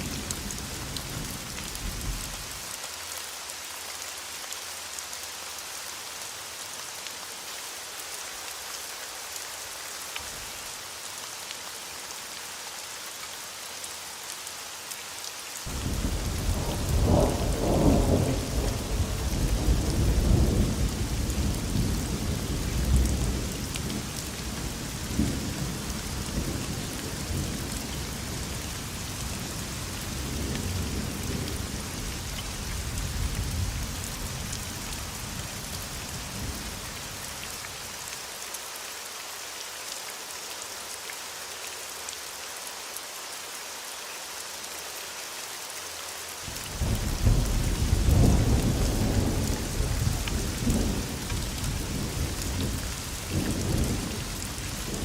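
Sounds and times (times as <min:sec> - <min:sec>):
heavy rain hissing: 0:00.0 - 0:55.0
rolling thunder: 0:15.7 - 0:23.5, 0:46.8 - 0:54.2.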